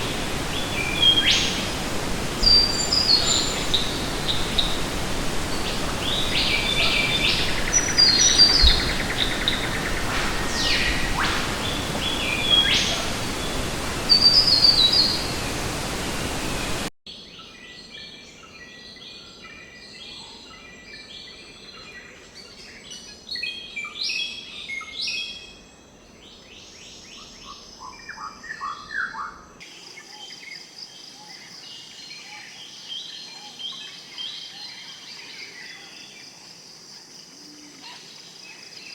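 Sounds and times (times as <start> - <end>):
background hiss: 0.0 - 17.3
birds chirping and calling: 2.4 - 15.4.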